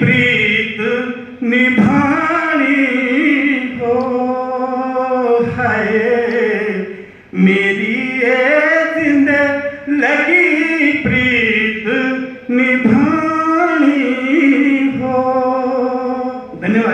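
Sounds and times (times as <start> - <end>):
man singing folk song: 0.0 - 16.9.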